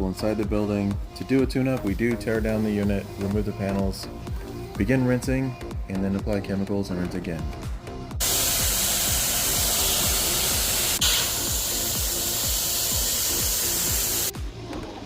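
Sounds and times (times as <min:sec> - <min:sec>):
background music with beat: 0:00.0 - 0:15.0
spray nozzle hissing: 0:08.2 - 0:14.3.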